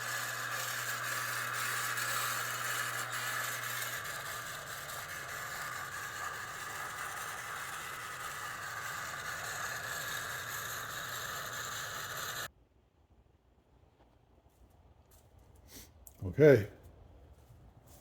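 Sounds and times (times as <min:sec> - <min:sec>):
band saw whirring: 0:00.0 - 0:12.5.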